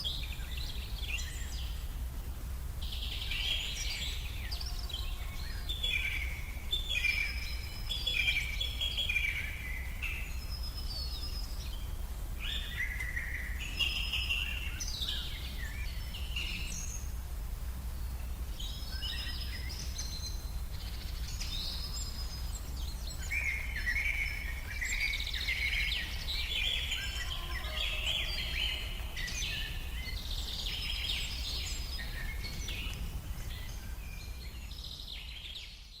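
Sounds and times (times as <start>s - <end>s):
forest birds singing: 0.0s - 36.0s
steady low rumble: 14.4s - 35.4s.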